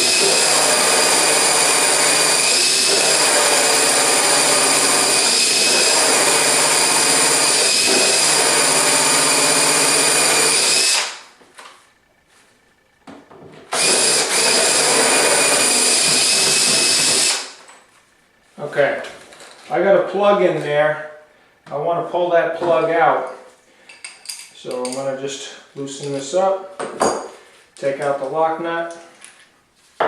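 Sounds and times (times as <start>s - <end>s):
power drill cutting wood: 0.0s - 11.3s, 13.7s - 17.6s.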